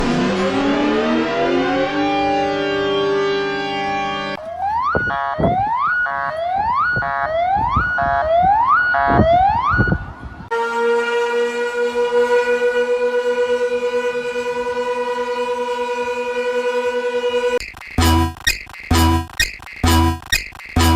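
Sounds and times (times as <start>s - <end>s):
rising whoop alarm sweep: 0.0s - 5.9s
pulsing buzzy alarm tone: 0.0s - 9.9s, 15.8s - 20.9s.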